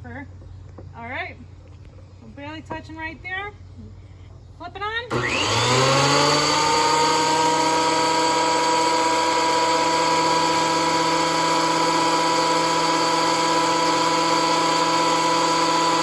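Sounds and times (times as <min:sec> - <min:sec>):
thickness planer motor whining: 0:05.1 - 0:16.0.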